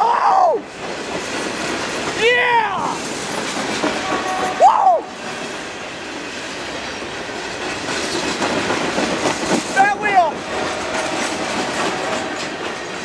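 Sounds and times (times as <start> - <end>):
freight train rolling on rails: 0.0 - 13.0
short whooping shout: 2.2 - 3.0, 4.6 - 5.1.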